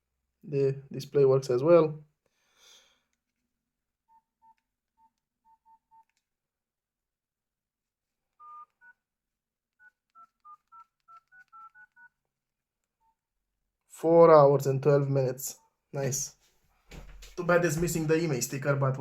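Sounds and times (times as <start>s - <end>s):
two-tone dialing tones: 4.1s - 6.2s, 8.3s - 9.1s, 9.7s - 12.2s.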